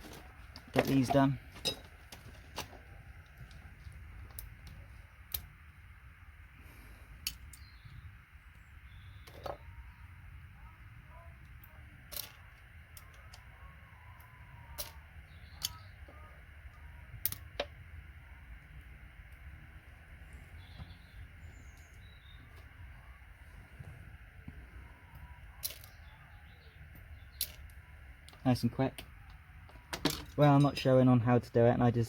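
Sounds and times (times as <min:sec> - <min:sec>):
low steady hum: 0:00.0 - 0:32.0
plastic connectors clicking: 0:17.2 - 0:17.7.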